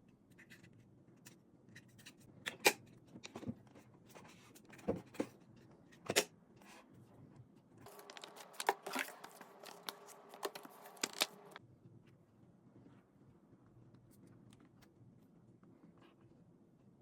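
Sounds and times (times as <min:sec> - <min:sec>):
hair dryer being handled: 0:07.8 - 0:11.6.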